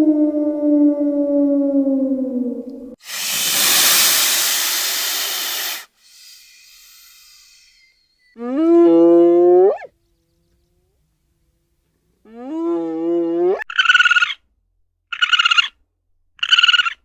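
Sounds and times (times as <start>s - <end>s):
animal hissing: 3.0s - 8.2s.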